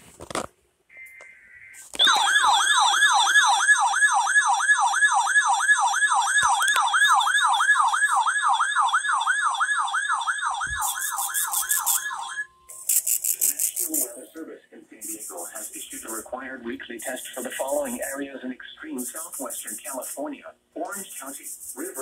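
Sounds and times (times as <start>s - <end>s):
electronic wailing siren: 1.0s - 13.1s, 17.0s - 18.2s
steady electronic tone: 6.4s - 14.0s.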